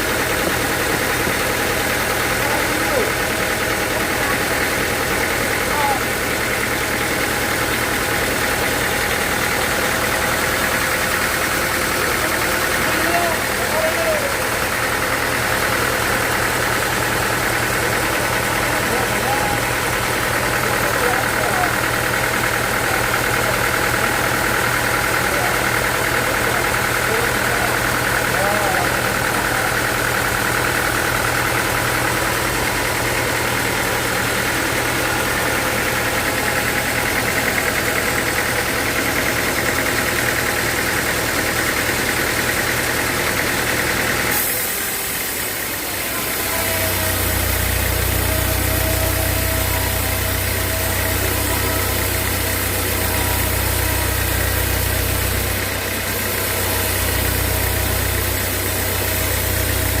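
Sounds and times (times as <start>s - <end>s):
sawmill machinery drone: 0.0s - 60.0s
deep steady hum: 44.3s - 60.0s.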